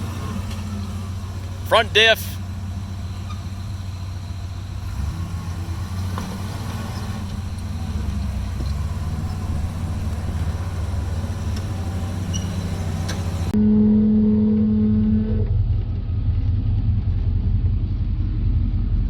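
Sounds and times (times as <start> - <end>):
car engine running at low revs: 0.0 - 13.6, 14.2 - 19.0.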